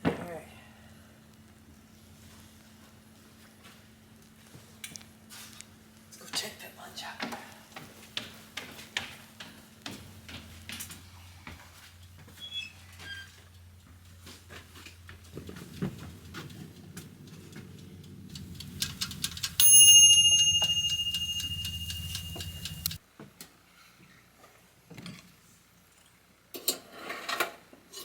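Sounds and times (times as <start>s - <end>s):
kitchen timer ticking: 17.2s - 23.0s
timer bell ringing: 19.6s - 23.0s.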